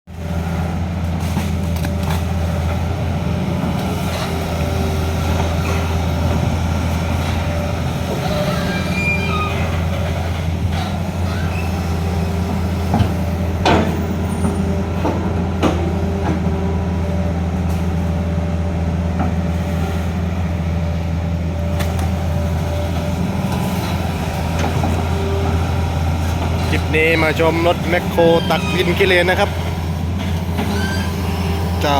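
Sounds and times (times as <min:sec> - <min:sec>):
excavator diesel engine running: 0:00.1 - 0:31.9
brief squeaks: 0:08.3 - 0:09.9
sharp metallic knocks: 0:13.6 - 0:16.4.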